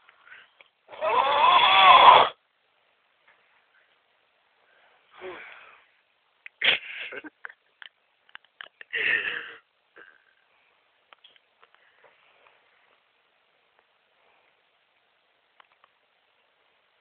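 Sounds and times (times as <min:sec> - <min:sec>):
person snoring: 0:00.9 - 0:02.4.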